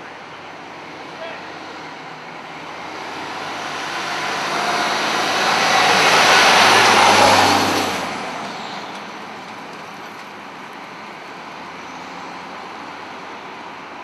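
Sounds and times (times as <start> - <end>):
vehicle passing by: 1.0 - 9.2.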